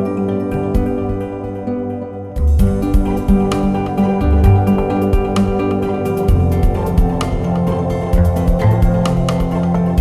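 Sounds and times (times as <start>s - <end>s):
instrumental guitar music with beat: 0.0s - 10.0s.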